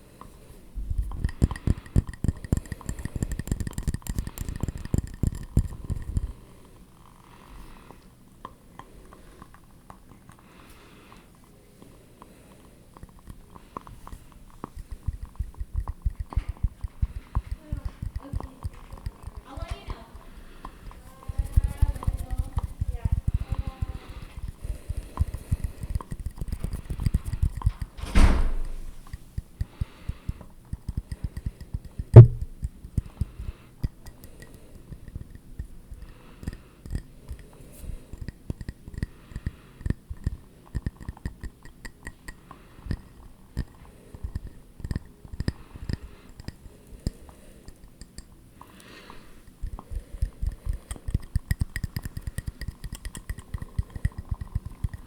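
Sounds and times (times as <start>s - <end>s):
light tapping on objects: 1.0s - 6.4s, 13.0s - 55.0s
sharp knock: 28.0s - 28.9s, 32.2s - 32.6s.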